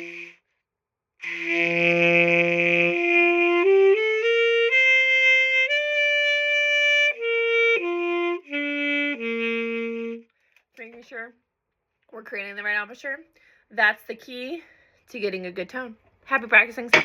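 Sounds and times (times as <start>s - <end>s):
saxophone playing long notes: 0.0s - 0.4s, 1.2s - 10.3s.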